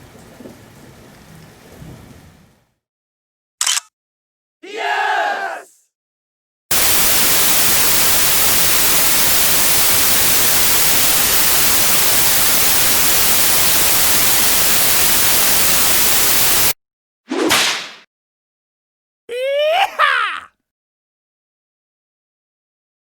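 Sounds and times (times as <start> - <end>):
static hiss: 6.7 - 16.8.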